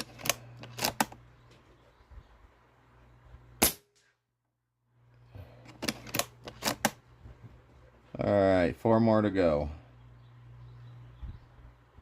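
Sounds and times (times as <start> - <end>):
air rifle shot: 3.6 - 4.1.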